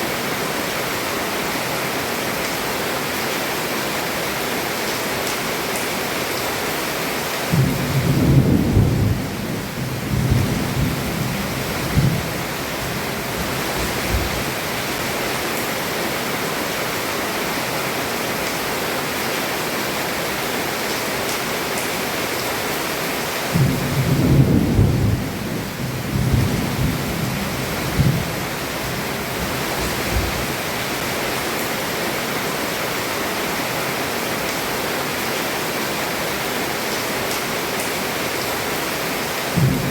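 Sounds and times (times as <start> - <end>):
heavy rain on a roof: 0.0 - 39.9
thunder rumbling: 7.5 - 14.6, 23.5 - 31.0, 39.5 - 39.9.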